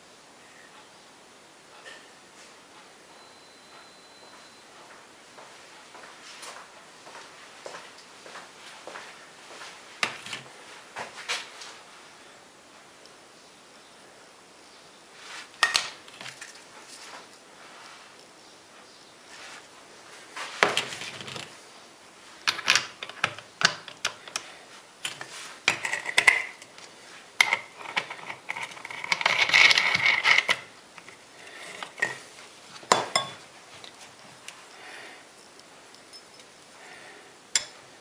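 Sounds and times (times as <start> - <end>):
metal parts clinking and scraping: 22.5 - 24.4, 25.0 - 34.0.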